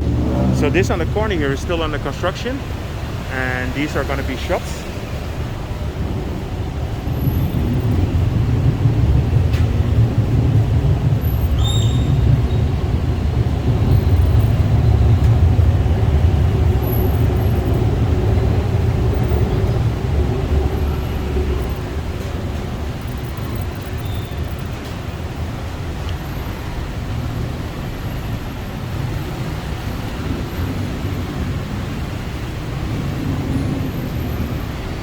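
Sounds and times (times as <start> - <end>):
passing vehicles rumbling: 0.0 - 35.0
high squeal: 11.4 - 12.6.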